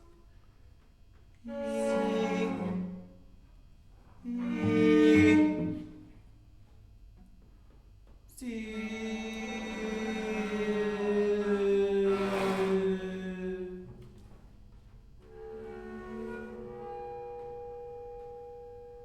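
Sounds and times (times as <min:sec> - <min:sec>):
bowed string long notes: 0:01.5 - 0:03.0, 0:04.3 - 0:06.0, 0:15.2 - 0:19.0.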